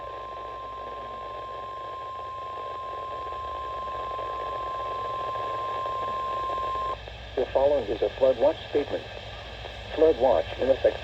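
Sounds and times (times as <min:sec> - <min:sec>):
radio background hiss: 0:05.1 - 0:11.0.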